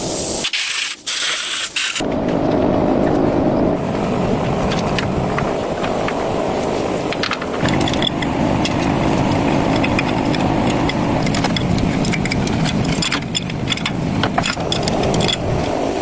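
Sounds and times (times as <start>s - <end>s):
mechanical motor running: 1.8s - 16.0s
small clicks and rattles: 3.9s - 16.0s.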